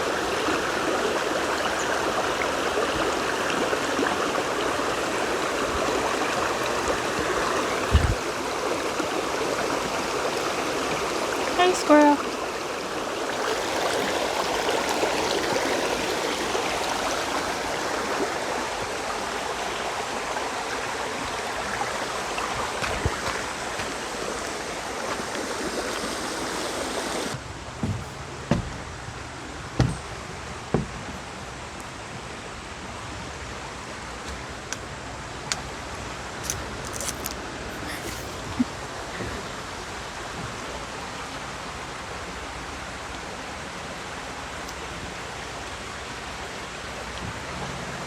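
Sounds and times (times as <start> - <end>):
creek water rushing: 0.0 - 48.0
short thumps: 7.9 - 8.2.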